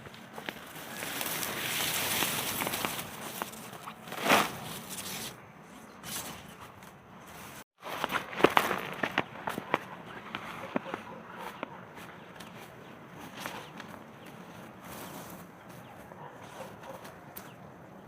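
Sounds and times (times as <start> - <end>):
dry straw rustling and crackling: 0.0 - 17.7.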